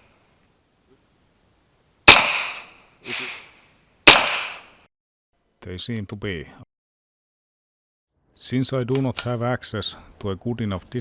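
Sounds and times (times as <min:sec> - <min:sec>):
suppressed gunshots: 0:02.1 - 0:02.8, 0:04.1 - 0:04.8.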